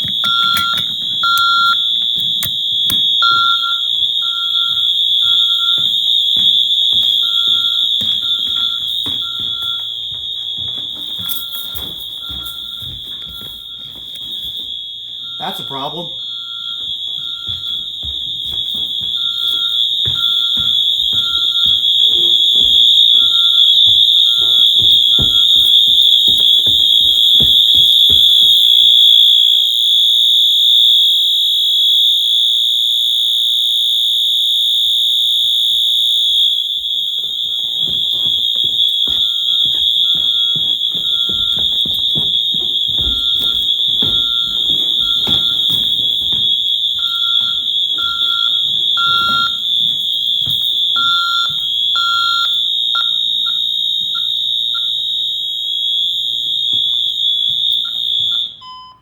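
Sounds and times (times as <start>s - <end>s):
beeping tone: 0.0s - 14.6s, 15.2s - 29.1s
fire alarm high-pitched tone: 0.0s - 59.0s.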